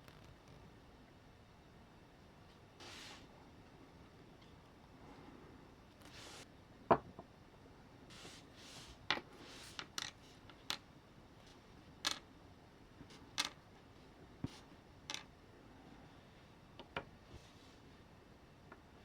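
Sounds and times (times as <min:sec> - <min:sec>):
clicks of small parts handled: 0:12.0 - 0:12.2, 0:13.4 - 0:13.6, 0:15.1 - 0:15.3.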